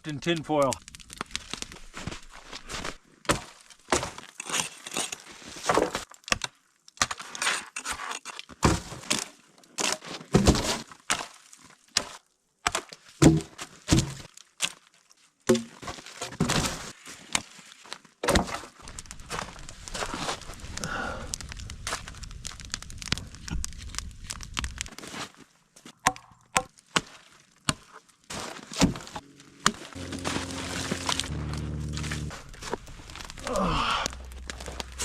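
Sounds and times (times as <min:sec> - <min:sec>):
tin foil package crinkling: 0:00.8 - 0:02.8, 0:32.2 - 0:35.0.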